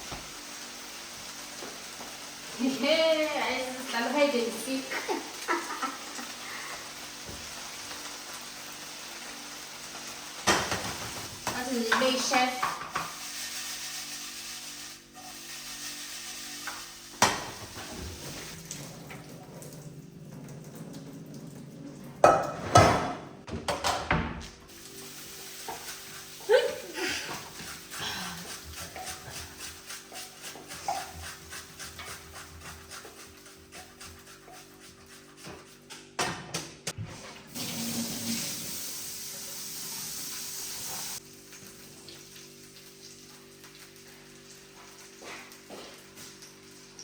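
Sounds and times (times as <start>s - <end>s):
pots and utensils clattering: 10.4s - 13.2s, 22.2s - 24.2s, 25.6s - 34.0s.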